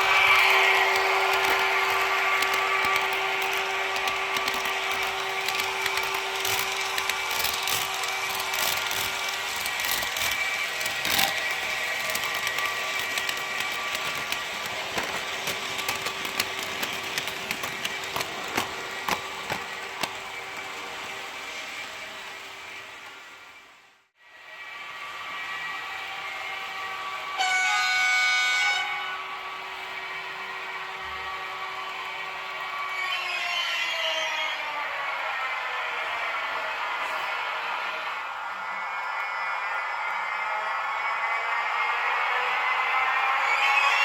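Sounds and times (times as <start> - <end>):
model train wheels clicking: 0.0 - 23.4.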